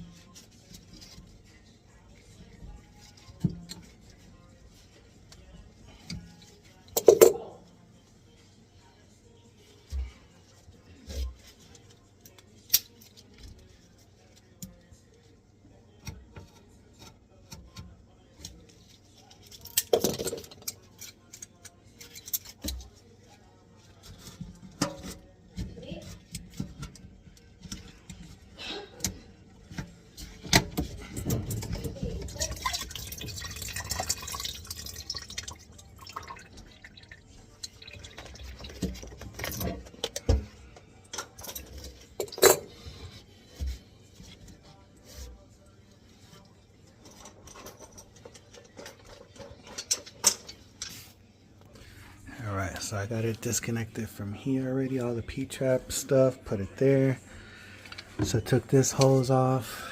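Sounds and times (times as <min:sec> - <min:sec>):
plastic pipes and tools clinking: 0:05.4 - 0:07.6, 0:16.0 - 0:23.0, 0:23.8 - 0:45.3, 0:46.1 - 0:51.1, 0:57.8 - 0:59.9.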